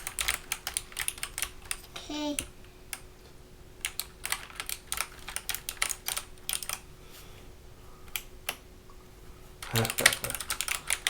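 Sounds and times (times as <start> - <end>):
mechanical keyboard typing: 0.0 - 3.0, 3.8 - 6.8, 9.6 - 11.0.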